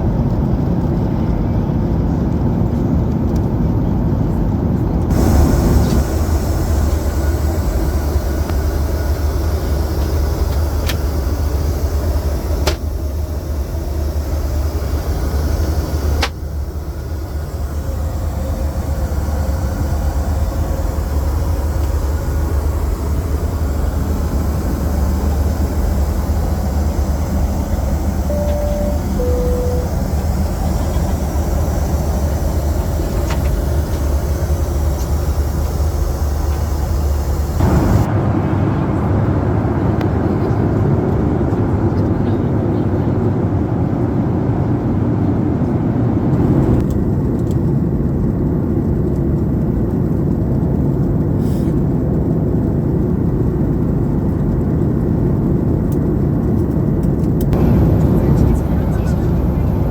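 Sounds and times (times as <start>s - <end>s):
airplane cabin rumble: 0.0s - 59.9s
two-note cabin chime: 26.6s - 31.8s.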